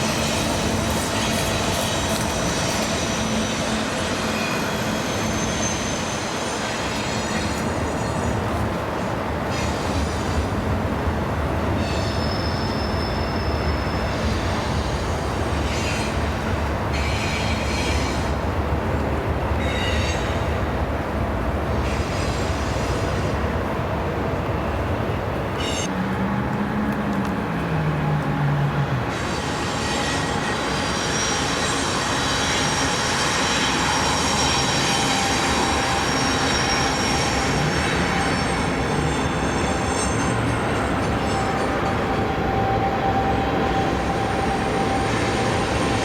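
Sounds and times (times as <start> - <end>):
high-pitched wheel squeals: 0.0 - 8.4, 11.8 - 18.5, 28.4 - 46.0
train wheels rumbling on rail: 0.0 - 46.0.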